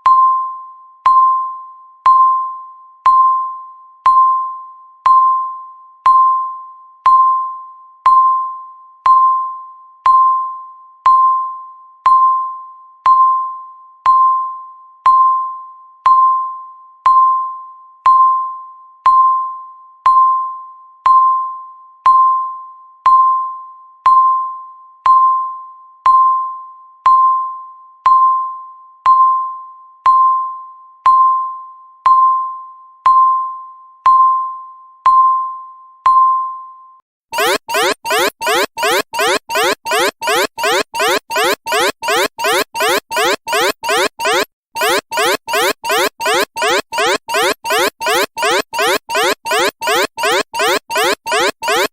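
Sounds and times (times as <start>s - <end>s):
countdown timer beeping: 37.4s - 51.9s.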